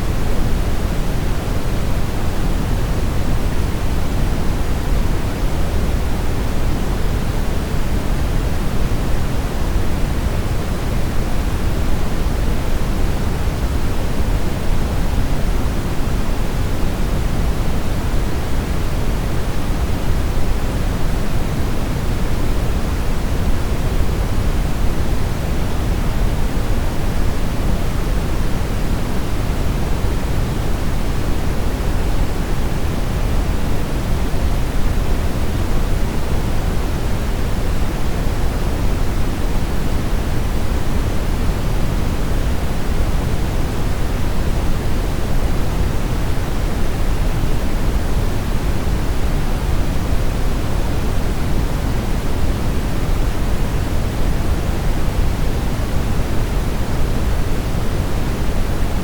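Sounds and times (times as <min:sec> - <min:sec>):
steady brown noise: 0:00.0 - 0:59.0.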